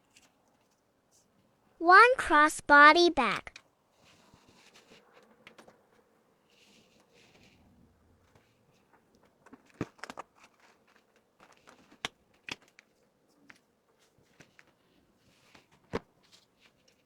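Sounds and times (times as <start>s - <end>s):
packaging rustling: 9.2s - 13.0s.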